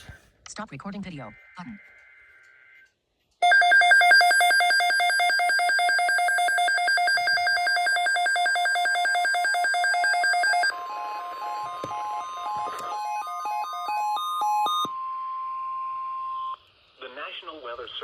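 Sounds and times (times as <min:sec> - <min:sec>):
fast-pulsing electronic warble alarm: 0:03.4 - 0:16.6.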